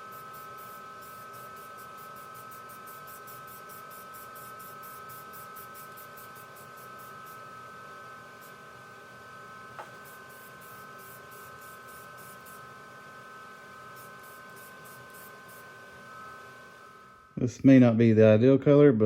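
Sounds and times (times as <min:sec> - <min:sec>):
faint steady hum: 0:00.0 - 0:19.0
spray can hissing: 0:09.8 - 0:12.7, 0:14.0 - 0:15.6.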